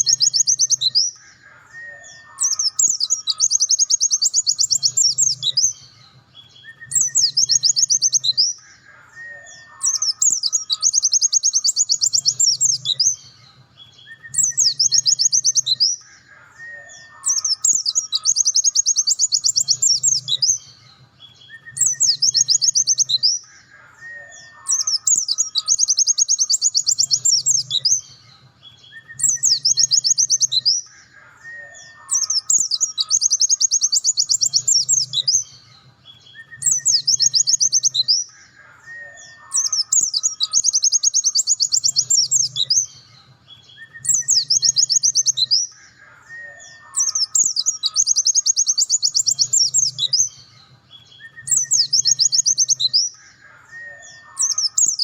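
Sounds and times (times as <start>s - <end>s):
white-eye bird twittering: 0.0s - 5.8s, 6.6s - 13.2s, 14.0s - 20.7s, 21.4s - 28.0s, 28.9s - 35.5s, 36.3s - 43.0s, 43.7s - 50.3s, 51.2s - 55.0s.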